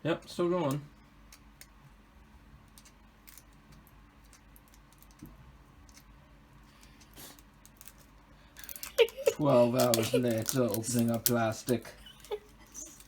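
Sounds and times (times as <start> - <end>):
plastic packaging crinkling: 6.7 - 13.0.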